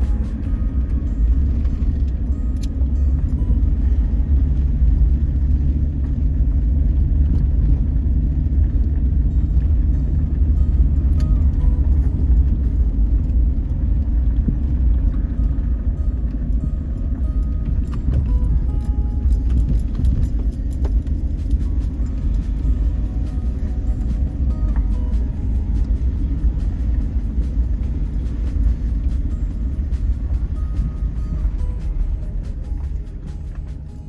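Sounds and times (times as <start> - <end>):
vehicle driving rumble: 0.0 - 34.0
small rattles and clicks: 17.6 - 34.0.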